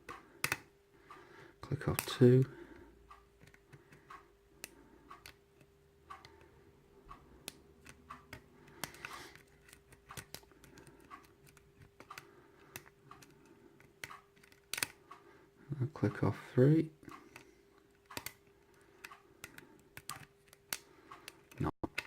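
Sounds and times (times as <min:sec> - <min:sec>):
lock picking clicks and scrapes: 0:03.4 - 0:04.1, 0:07.4 - 0:15.0, 0:17.1 - 0:22.0.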